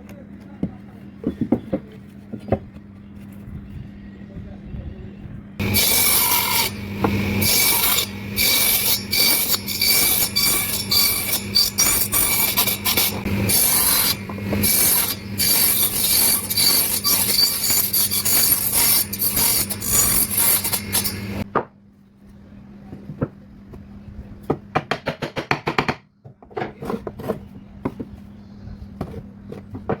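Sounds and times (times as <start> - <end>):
wood rasping with abrasive tool: 5.6 - 21.4.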